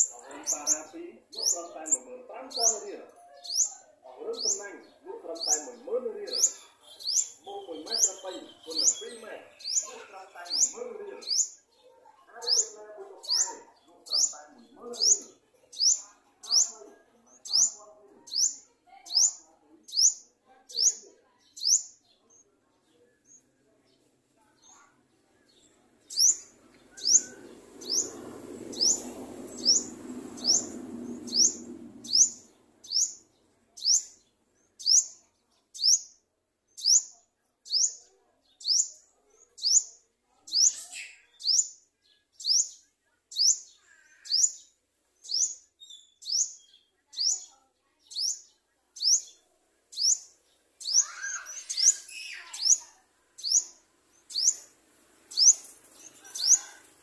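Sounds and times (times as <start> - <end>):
bird chirping high: 0.0 - 11.8, 12.4 - 16.8, 17.4 - 22.0, 25.5 - 36.2, 36.8 - 39.0, 39.6 - 54.7, 55.3 - 56.7
low rumbling noise: 27.4 - 32.8.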